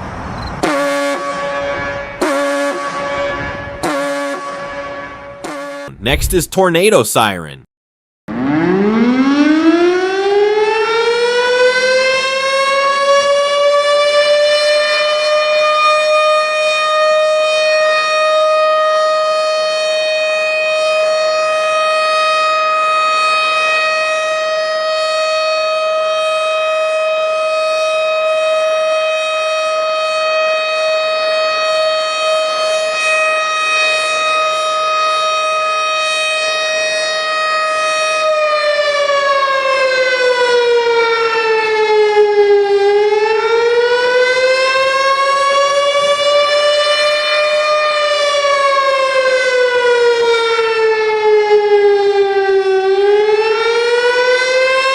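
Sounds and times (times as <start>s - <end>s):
warning siren: 0.7s - 5.9s, 8.3s - 54.9s.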